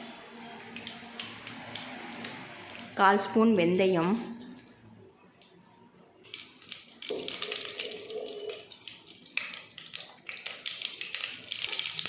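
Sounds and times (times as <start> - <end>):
seeds spluttering in hot oil: 6.2 - 12.0.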